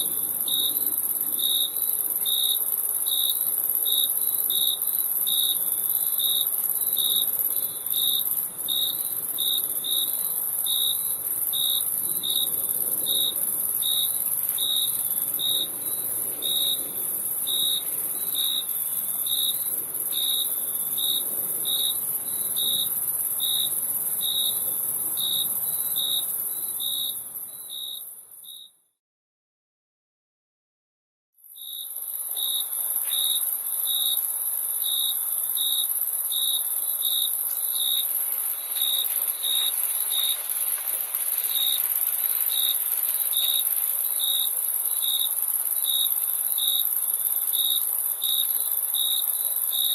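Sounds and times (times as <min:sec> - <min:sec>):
lower cricket chirp: 0:00.0 - 0:28.8, 0:31.4 - 0:49.9
high-pitched cricket trill: 0:31.6 - 0:49.9.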